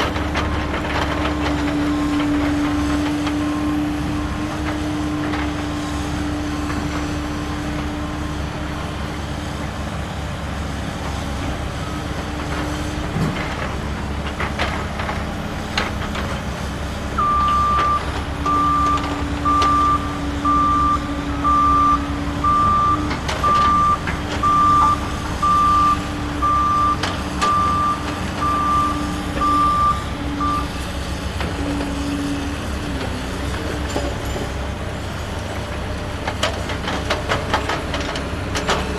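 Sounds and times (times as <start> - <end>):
toy reversing alarm beeps: 17.2 - 30.7.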